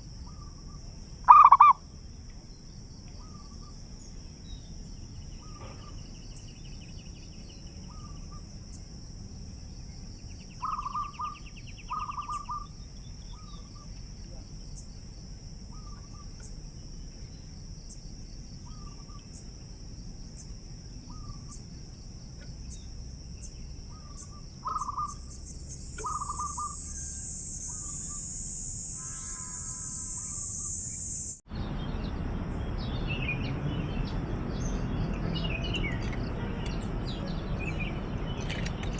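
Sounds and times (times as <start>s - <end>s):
doves cooing: 1.3s - 1.8s, 26.0s - 26.8s
high-pitched insect drone: 22.7s - 31.4s.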